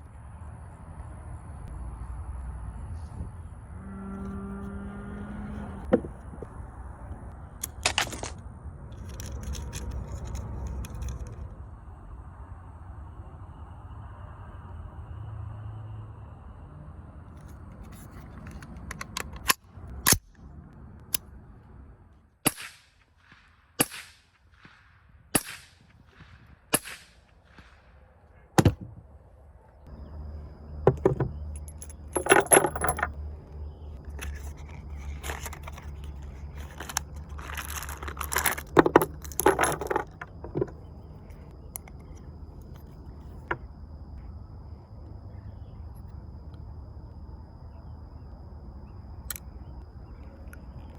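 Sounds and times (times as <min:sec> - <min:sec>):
metallic clattering and rattling: 0:30.9 - 0:33.2, 0:34.2 - 0:40.9.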